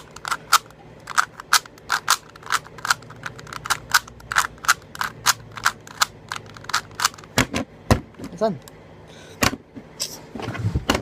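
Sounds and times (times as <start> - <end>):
puzzle cube clacking: 0.0 - 7.4.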